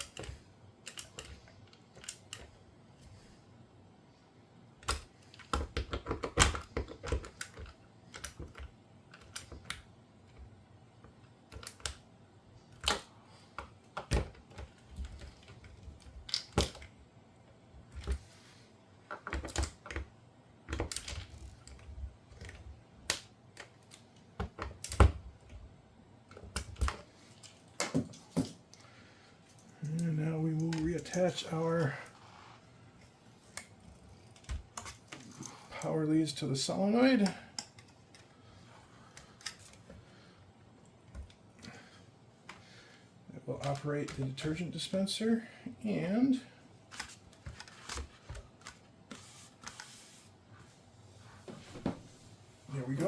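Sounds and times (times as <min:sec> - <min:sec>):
hand tools clicking and tapping: 0:04.8 - 0:09.8.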